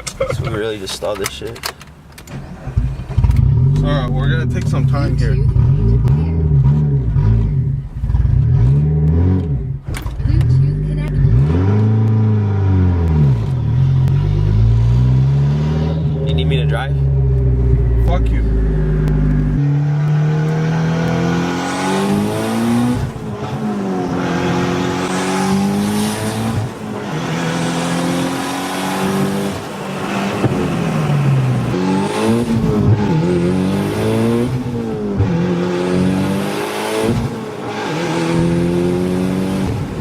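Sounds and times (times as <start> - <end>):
car engine accelerating through gears: 2.5 - 40.0.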